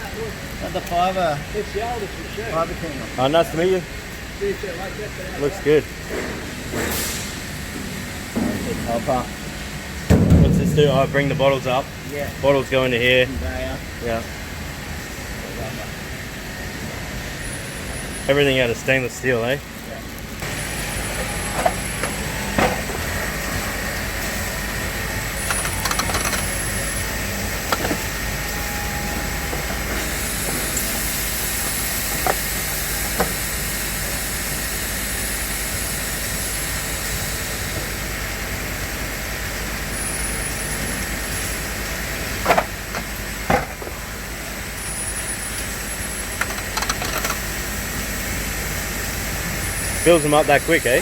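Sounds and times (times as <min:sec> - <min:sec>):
machine hum and hiss: 0:00.0 - 0:51.0.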